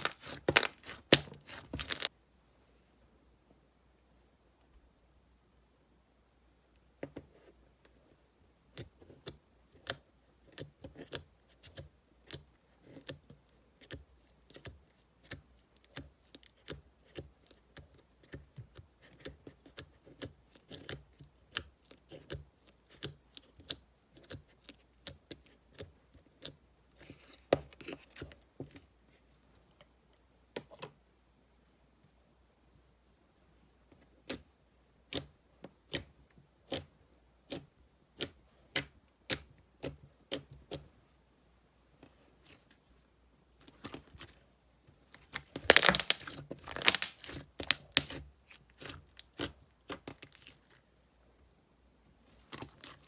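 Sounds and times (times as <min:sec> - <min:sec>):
slime squeezed by hand clicking: 0:45.6 - 0:48.2.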